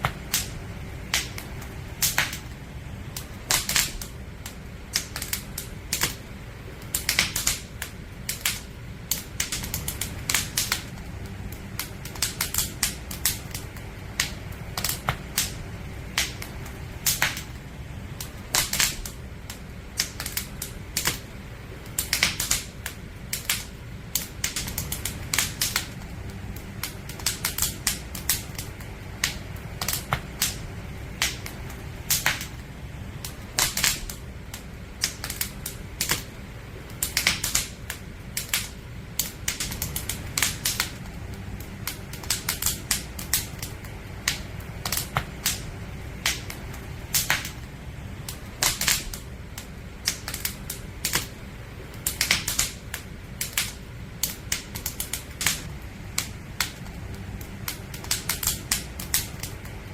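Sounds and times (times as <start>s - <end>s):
campfire crackling and popping: 0.0s - 59.9s
low rumble of fire: 0.0s - 59.9s.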